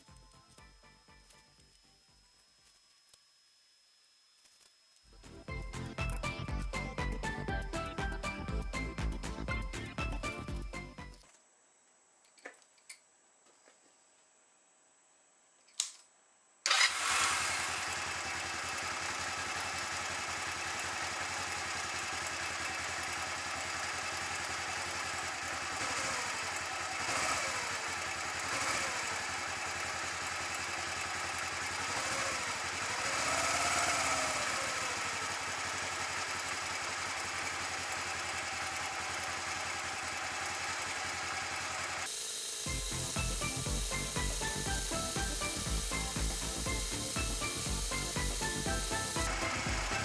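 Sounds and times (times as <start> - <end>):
motorcycle engine starting and idling: 5.1 - 11.2, 16.7 - 50.0.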